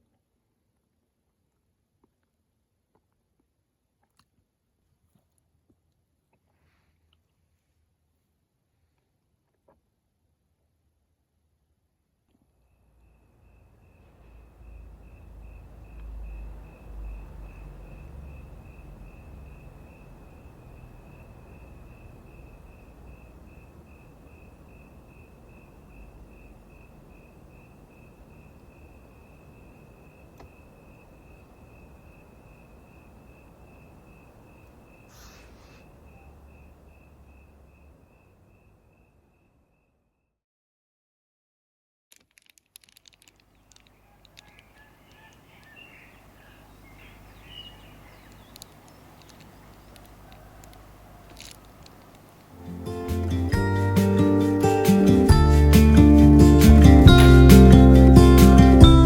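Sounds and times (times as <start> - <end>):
cricket chirping: 12.7 - 40.0, 43.4 - 59.0
low steady rumble: 14.6 - 34.8
sharp clicks: 48.2 - 52.6.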